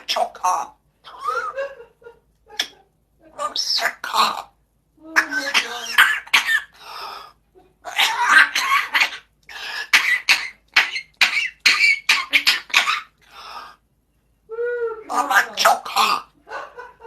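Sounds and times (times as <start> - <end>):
parrot imitating coughing: 0.0 - 1.5, 2.6 - 4.5, 5.2 - 13.8, 15.1 - 16.4.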